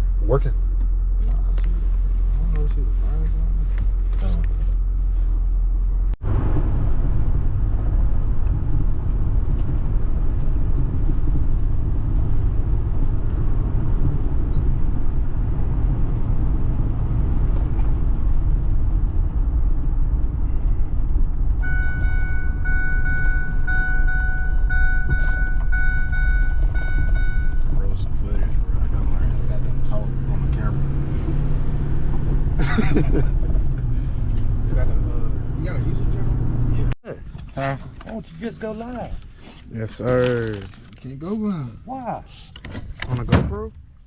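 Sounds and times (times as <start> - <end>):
road and engine rumble in a vehicle: 0.0 - 44.0
steady high tone: 21.6 - 27.6.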